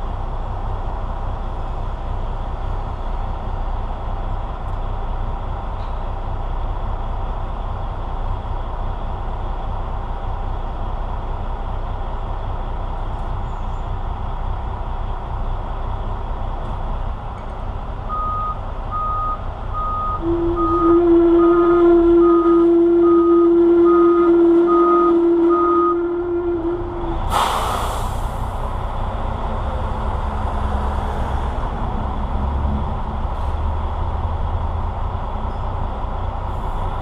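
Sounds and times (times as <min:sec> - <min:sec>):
diesel truck engine running: 0:00.0 - 0:37.0
reversing alarm beeping: 0:18.1 - 0:21.6, 0:22.2 - 0:26.0.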